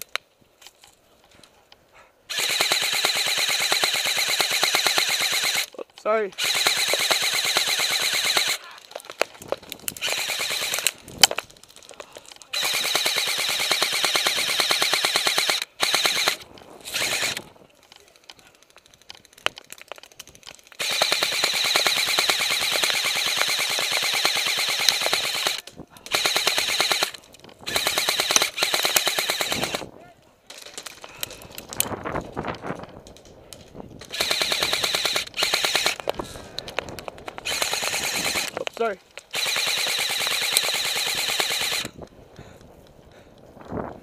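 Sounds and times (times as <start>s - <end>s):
airsoft machine gun full-auto bursts: 2.3s - 5.7s, 6.3s - 8.8s, 10.0s - 10.9s, 12.5s - 17.5s, 20.8s - 29.9s, 34.0s - 36.0s, 37.3s - 38.6s, 39.3s - 42.0s.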